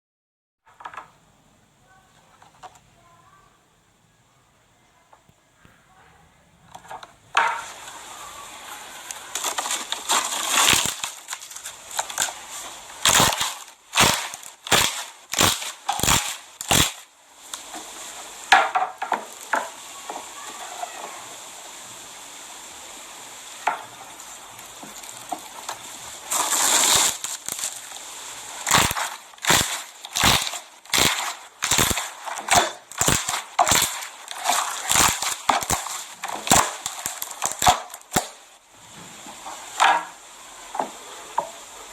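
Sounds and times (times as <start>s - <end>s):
slime popping and crackling: 9.0s - 19.8s, 24.6s - 38.5s.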